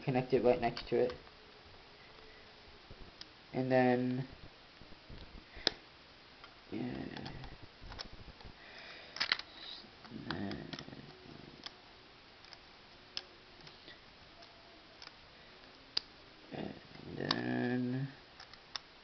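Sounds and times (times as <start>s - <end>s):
plastic bricks clicking and rattling: 9.1s - 9.5s.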